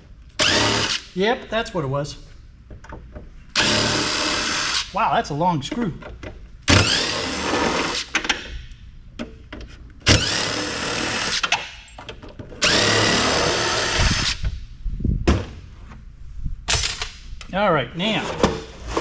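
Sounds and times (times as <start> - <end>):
power drill spinning: 0.4 - 1.0, 3.6 - 4.9, 6.7 - 8.1, 10.1 - 11.5, 12.6 - 14.4.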